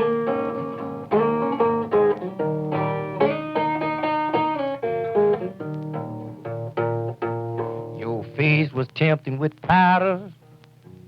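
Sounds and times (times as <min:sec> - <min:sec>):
guitar picking: 0:00.0 - 0:11.0
person singing: 0:08.0 - 0:10.4.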